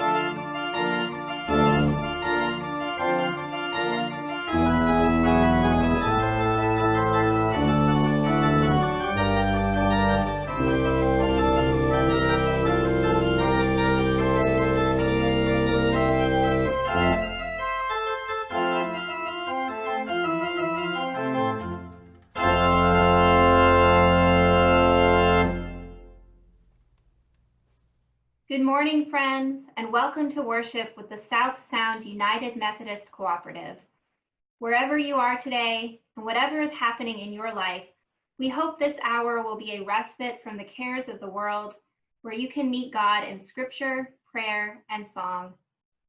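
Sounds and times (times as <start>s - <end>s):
organ playing sustained chords: 0.0s - 26.5s.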